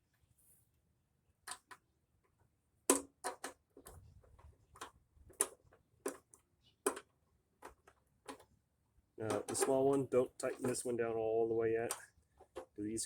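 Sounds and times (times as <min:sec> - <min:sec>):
small hardware clicks and knocks: 0:02.9 - 0:08.5, 0:09.2 - 0:10.9, 0:11.8 - 0:12.8.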